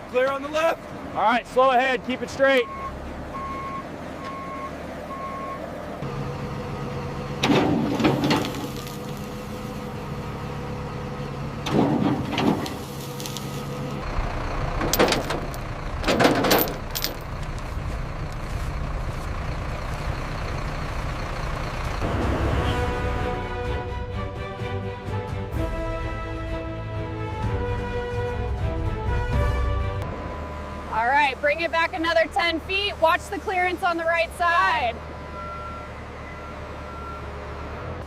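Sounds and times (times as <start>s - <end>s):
heavy vehicle engine running: 0.0s - 38.0s
reversing beeper: 2.6s - 5.6s, 35.2s - 37.4s.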